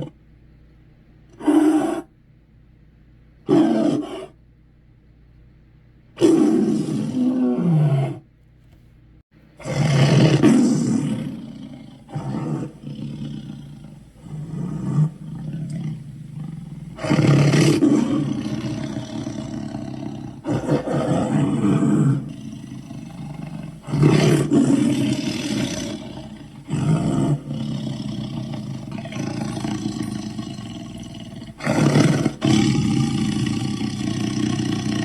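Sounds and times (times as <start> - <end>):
monster roaring: 9.6 - 35.0.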